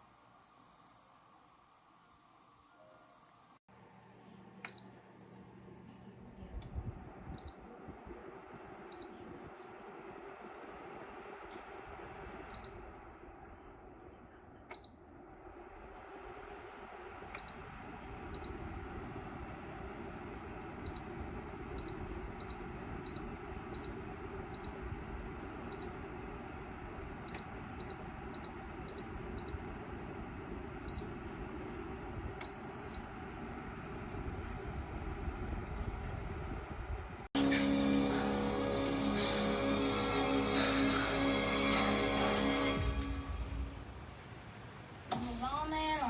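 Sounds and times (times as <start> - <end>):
steady rushing noise: 6.8 - 14.6, 15.2 - 27.3
control panel beeping: 14.7 - 15.1.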